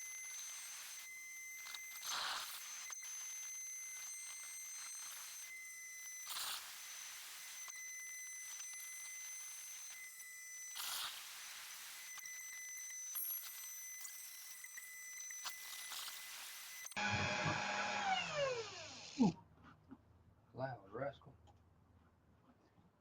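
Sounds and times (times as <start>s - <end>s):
router spindle whining: 11.8s - 19.4s
rush of cutting noise: 17.0s - 19.3s.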